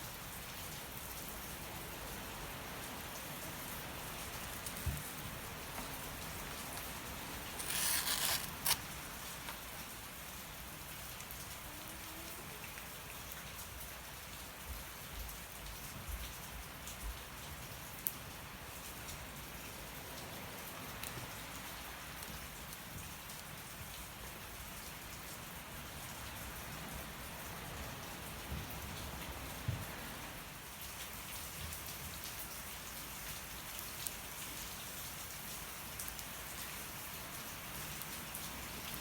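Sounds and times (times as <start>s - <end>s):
steady rain falling: 0.0s - 39.0s
wood fire crackling: 1.7s - 10.0s.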